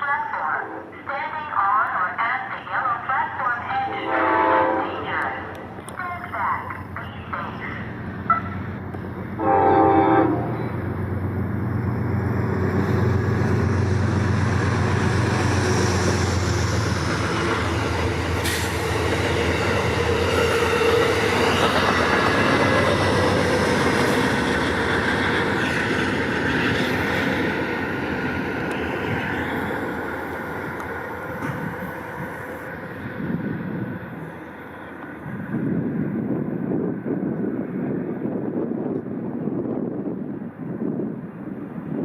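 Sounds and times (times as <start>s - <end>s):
train horn blast: 3.9s - 5.6s, 9.4s - 10.8s.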